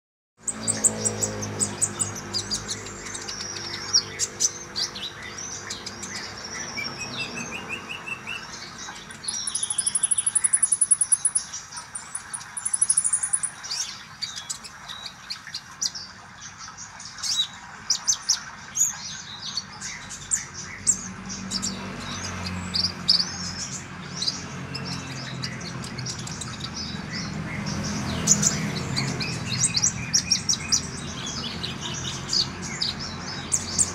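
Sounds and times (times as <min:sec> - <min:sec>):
high buzzy bird trill: 0:00.4 - 0:14.6
songbird chirping and twittering: 0:00.4 - 0:33.9.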